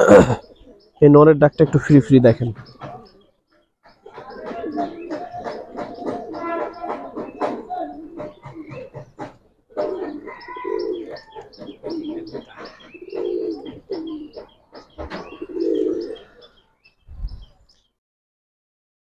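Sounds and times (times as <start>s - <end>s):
pigeon cooing: 0.0s - 1.0s, 3.8s - 16.5s.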